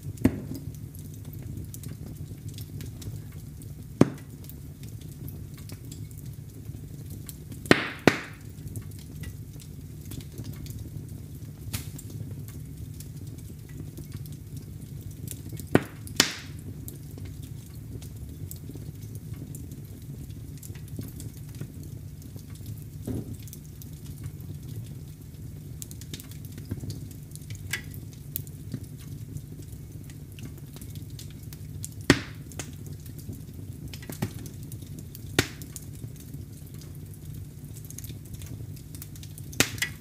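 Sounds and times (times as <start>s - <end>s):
wood fire crackling: 0.0s - 40.0s
sharp fire pops: 0.1s - 17.4s, 22.5s - 24.7s, 30.1s - 40.0s.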